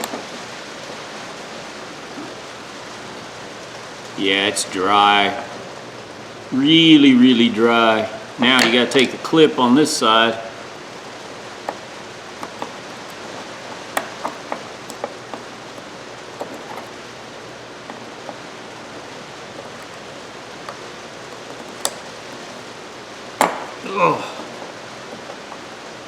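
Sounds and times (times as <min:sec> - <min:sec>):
rain hissing: 0:00.0 - 0:26.0
pliers clicking on metal: 0:11.7 - 0:17.0, 0:17.9 - 0:22.9.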